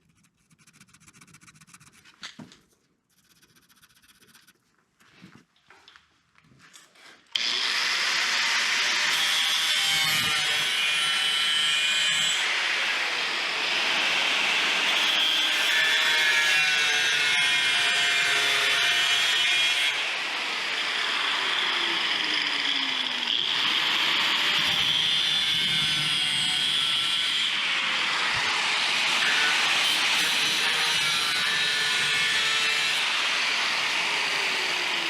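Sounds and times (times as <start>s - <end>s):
power tool grinding metal: 7.4s - 35.0s.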